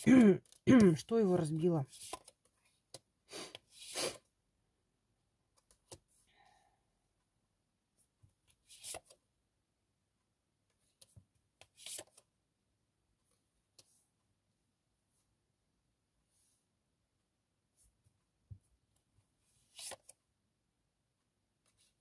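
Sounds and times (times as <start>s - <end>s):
cards being shuffled: 0.0s - 4.2s, 8.5s - 9.2s, 10.9s - 12.3s, 19.6s - 20.2s.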